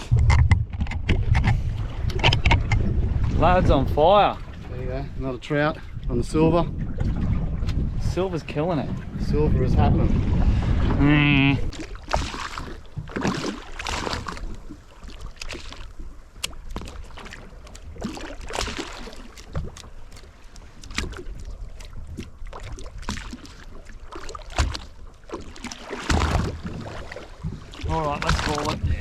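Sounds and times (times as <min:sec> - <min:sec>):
knocks and clicks: 0:00.0 - 0:02.8
low rumble: 0:00.0 - 0:11.8
water lapping against boat hull: 0:00.0 - 0:29.0.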